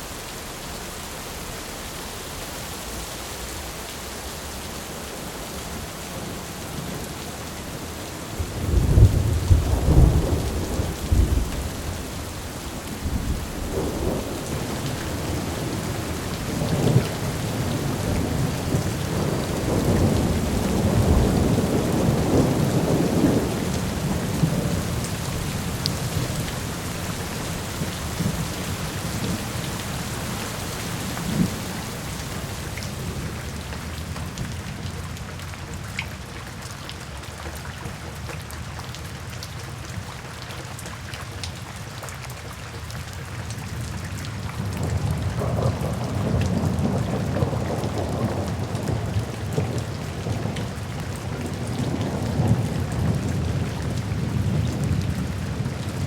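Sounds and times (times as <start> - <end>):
steady rain falling: 0.0 - 56.0
thunder rumbling: 5.0 - 34.9, 44.4 - 56.0.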